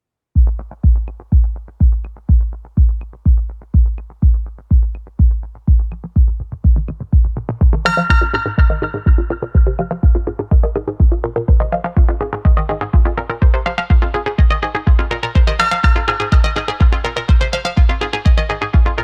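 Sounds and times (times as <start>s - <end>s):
heavy kick drum: 0.4s - 19.0s
synth chord: 7.8s - 19.0s.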